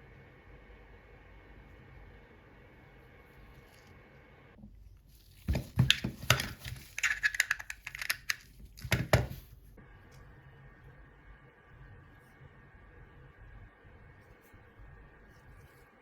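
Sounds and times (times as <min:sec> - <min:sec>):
handling clicks and crinkling: 0:05.1 - 0:09.5.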